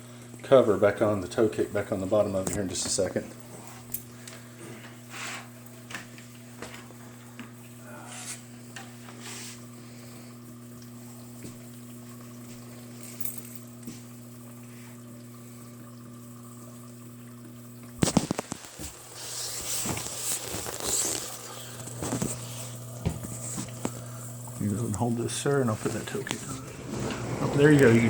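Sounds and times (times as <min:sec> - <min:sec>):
dishwasher motor hum: 0:00.0 - 0:28.0.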